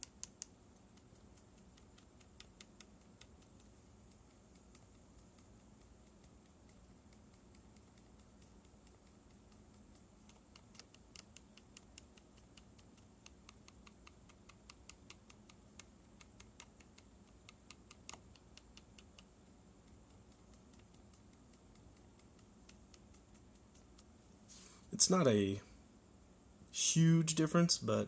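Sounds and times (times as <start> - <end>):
keyboard keys ticking: 0.0 - 24.0.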